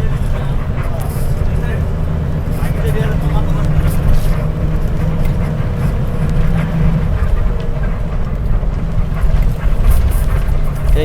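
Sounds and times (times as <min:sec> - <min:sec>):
bus engine and road rumble: 0:00.0 - 0:11.0.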